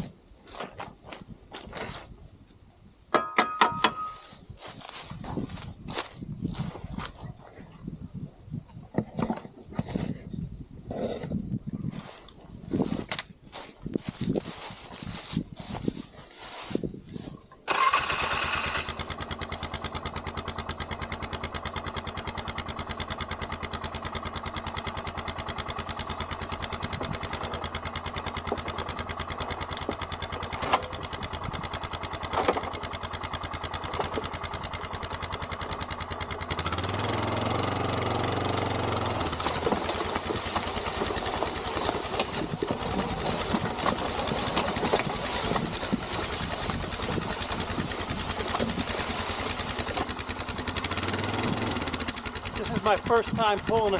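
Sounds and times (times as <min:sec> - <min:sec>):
quad engine idling and revving: 0:14.0 - 0:53.9.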